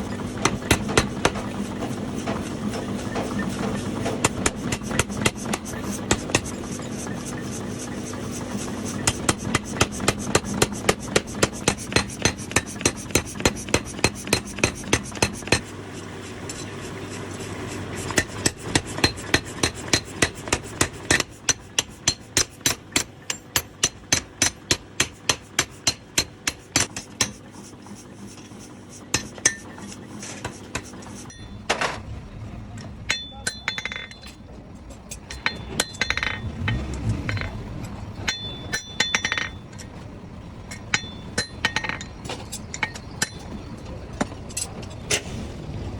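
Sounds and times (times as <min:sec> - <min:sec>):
hammer striking metal: 0:03.1 - 0:06.6, 0:08.9 - 0:15.7, 0:18.0 - 0:27.4, 0:33.1 - 0:34.4, 0:35.1 - 0:37.6, 0:38.2 - 0:39.9, 0:40.7 - 0:43.6
metal knocks and clinks: 0:33.1 - 0:34.5, 0:35.1 - 0:37.6, 0:38.2 - 0:40.0, 0:40.7 - 0:43.6.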